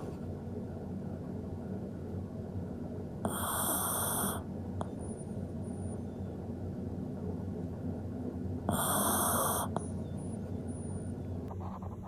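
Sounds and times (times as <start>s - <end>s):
dog snoring: 3.2s - 5.2s, 8.7s - 10.0s.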